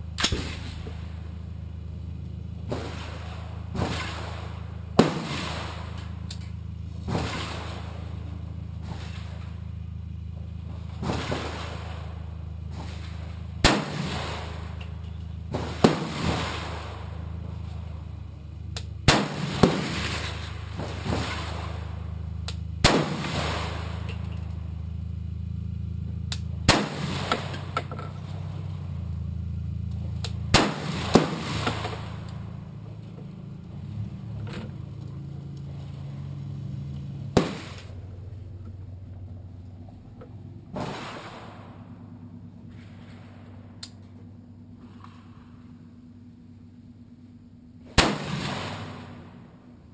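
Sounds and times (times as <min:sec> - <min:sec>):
steady low hum: 0:00.0 - 0:49.9
rifle shots: 0:00.2 - 0:01.0, 0:02.7 - 0:06.2, 0:11.0 - 0:14.8, 0:15.5 - 0:17.2, 0:19.1 - 0:22.0, 0:22.8 - 0:24.2, 0:26.7 - 0:27.8, 0:30.5 - 0:32.3, 0:37.3 - 0:38.0, 0:40.7 - 0:41.9, 0:47.9 - 0:49.4.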